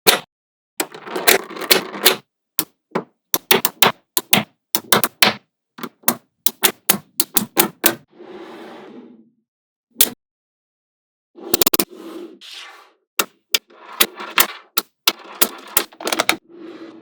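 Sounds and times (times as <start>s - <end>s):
magnetic balls clicking together: 3.4s - 8.0s, 13.2s - 16.4s.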